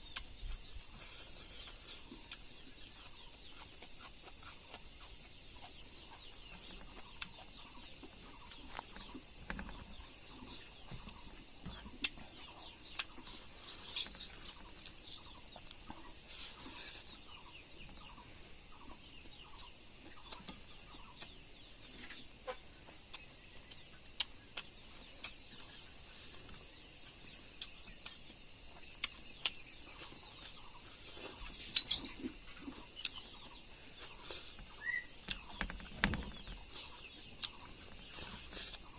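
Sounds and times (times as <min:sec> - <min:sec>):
steady high hiss: 0:00.0 - 0:06.5
chickens clucking: 0:00.1 - 0:38.9.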